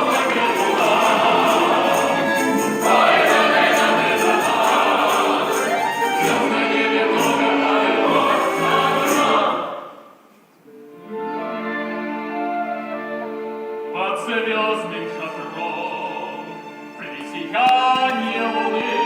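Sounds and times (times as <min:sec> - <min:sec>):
choir singing: 0:00.0 - 0:10.2.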